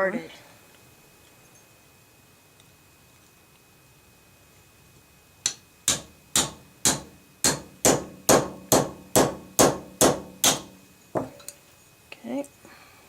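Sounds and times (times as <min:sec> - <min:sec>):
hammer tapping metal: 0:05.4 - 0:11.5.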